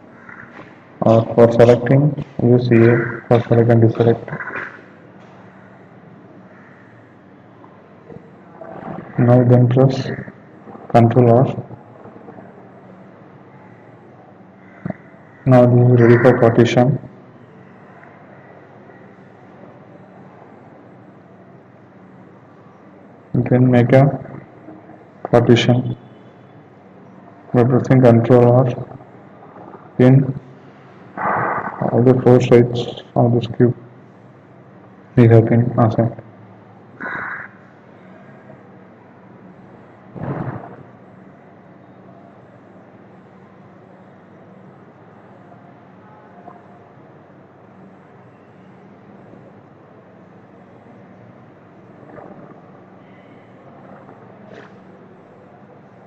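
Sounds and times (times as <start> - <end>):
microphone background hiss: 0.0 - 6.8, 7.4 - 17.4, 19.5 - 26.2, 26.8 - 45.8.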